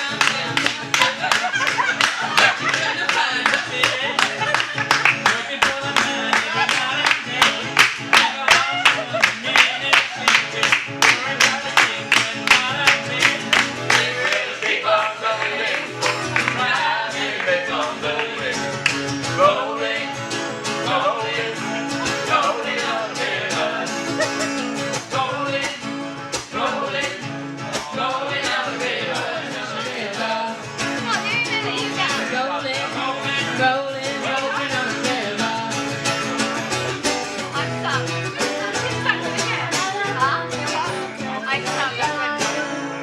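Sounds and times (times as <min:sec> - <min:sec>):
person singing: 0:00.0 - 0:18.7, 0:20.8 - 0:25.8, 0:37.0 - 0:43.0
acoustic guitar strumming: 0:00.0 - 0:43.0.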